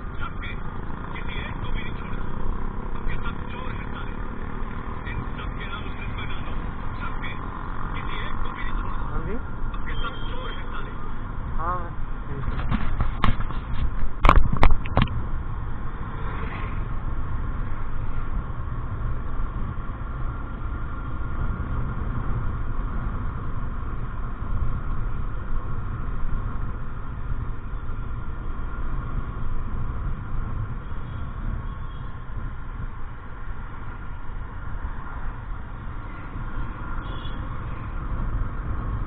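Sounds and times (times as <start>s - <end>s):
vehicle road noise: 0.0s - 39.0s
sharp clicks or pops: 12.5s - 15.2s.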